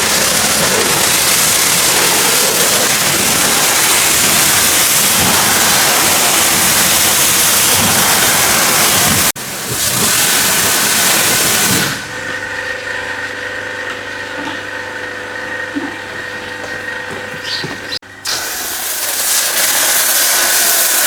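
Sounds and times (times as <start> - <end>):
pressure washer jet spraying: 0.0 - 12.1, 18.2 - 21.0.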